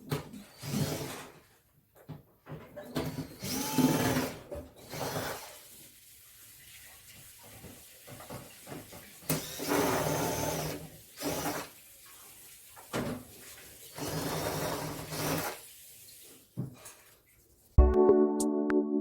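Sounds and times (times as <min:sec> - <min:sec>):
electric screwdriver running: 0:03.4 - 0:05.5, 0:09.3 - 0:11.7.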